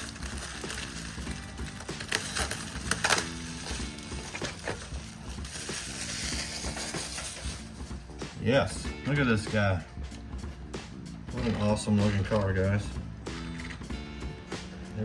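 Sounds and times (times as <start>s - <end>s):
plastic packaging crinkling: 0.0s - 7.6s.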